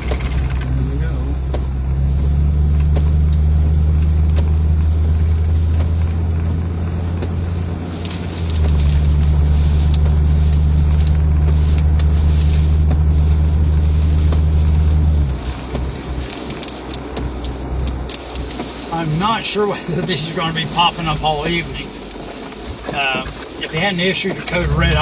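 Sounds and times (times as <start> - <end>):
car engine and road noise: 0.0 - 25.0
faint ticks: 1.5 - 18.8.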